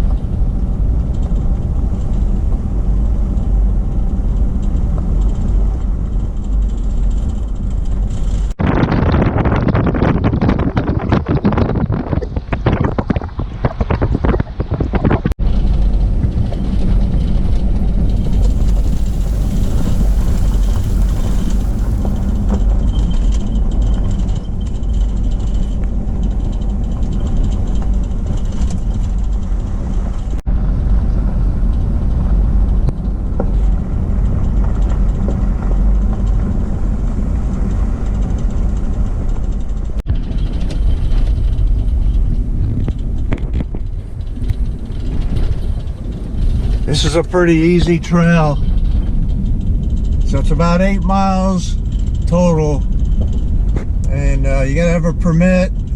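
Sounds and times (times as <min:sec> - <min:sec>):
tyre noise on road: 0:17.9 - 0:22.8
car engine: 0:18.0 - 0:22.7.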